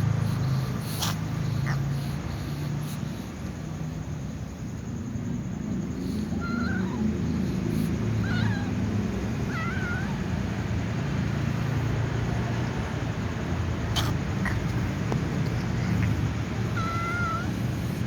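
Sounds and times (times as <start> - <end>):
cat meowing: 6.3 - 7.1, 7.8 - 10.3, 14.0 - 18.0.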